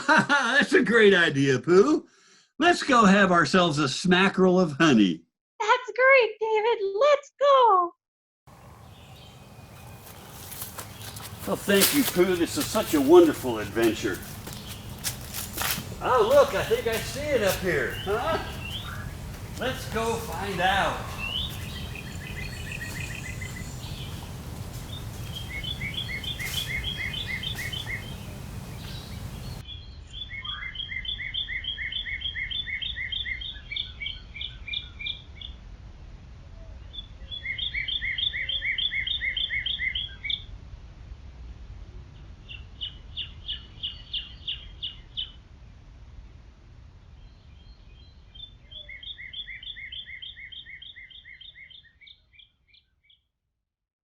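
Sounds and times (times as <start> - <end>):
songbird trilling: 8.6 - 29.6.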